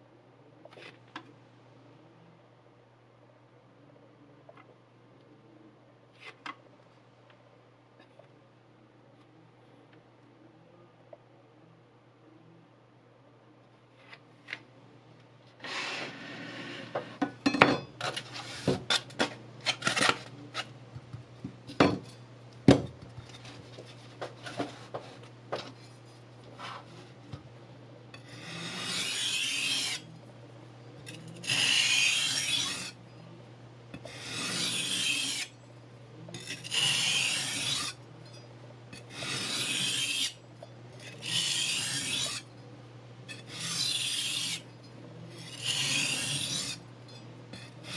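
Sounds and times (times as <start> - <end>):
knife scraping on sandpaper: 15.6 - 17.2, 18.1 - 20.7, 28.2 - 30.0, 31.1 - 33.0, 34.1 - 35.5, 36.4 - 38.0, 39.0 - 40.4, 41.0 - 42.5, 43.3 - 44.6, 45.4 - 46.8, 47.6 - 47.9.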